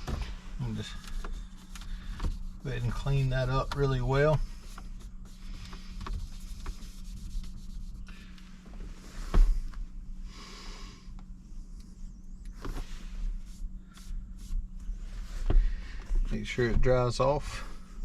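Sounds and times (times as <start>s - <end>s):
steady low hum: 0.0s - 18.0s
cloth wiping a surface: 0.3s - 9.6s, 12.6s - 15.6s.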